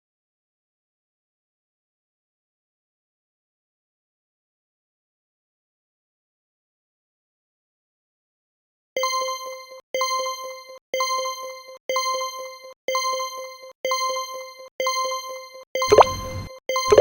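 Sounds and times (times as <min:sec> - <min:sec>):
beeps with falling swoop: 0:15.8 - 0:17.0
electronic chime: 0:15.9 - 0:17.0.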